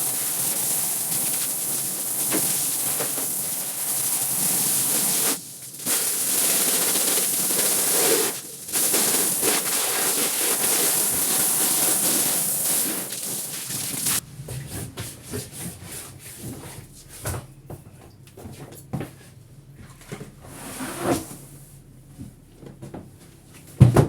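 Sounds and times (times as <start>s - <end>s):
water spray hissing onto rug: 0.0s - 14.2s.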